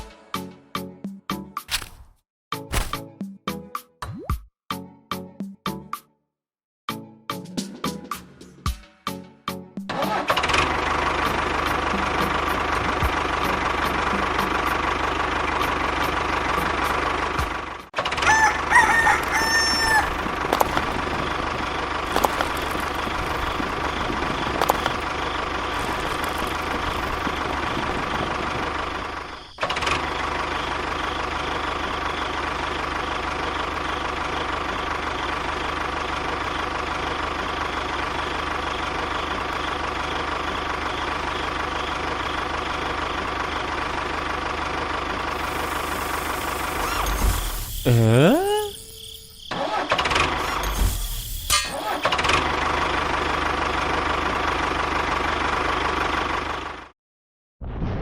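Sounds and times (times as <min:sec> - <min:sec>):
rooster crowing: 0:18.1 - 0:21.6
small motor whining: 0:45.3 - 0:47.9.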